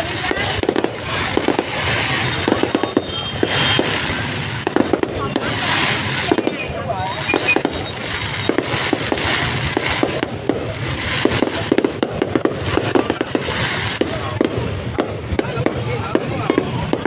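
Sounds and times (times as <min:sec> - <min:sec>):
fireworks bangs and crackles: 0:00.0 - 0:17.0.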